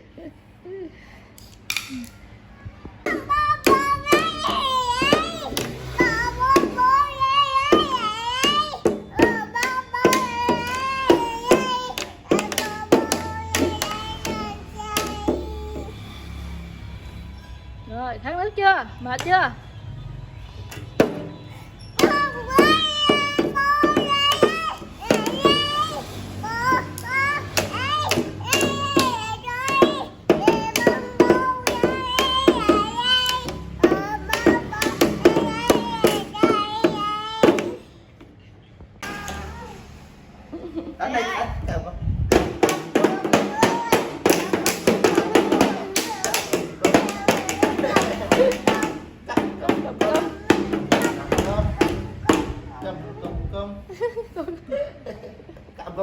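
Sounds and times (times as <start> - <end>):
person singing children's song: 2.9 - 16.6, 20.7 - 37.9, 39.0 - 40.0, 42.3 - 53.5
sharp tapping beat: 3.1 - 16.1, 20.8 - 37.9, 42.3 - 52.7
sharp knocks or claps: 3.1 - 16.3, 22.0 - 37.9, 42.3 - 52.7.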